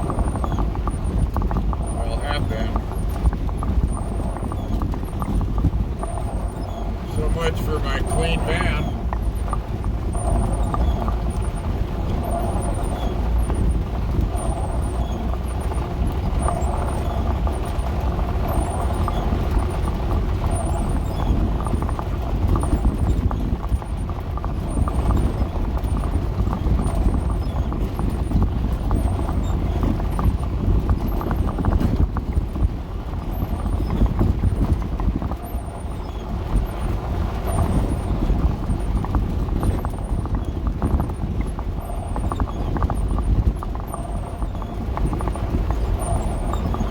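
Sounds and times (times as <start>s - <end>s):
body rattling and knocking: 0.0s - 46.9s
van engine and road rumble: 0.0s - 46.9s.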